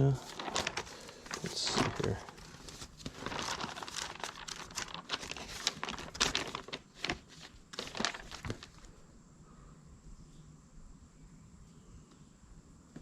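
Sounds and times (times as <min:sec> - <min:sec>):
paper pages rustling: 0:00.0 - 0:08.9.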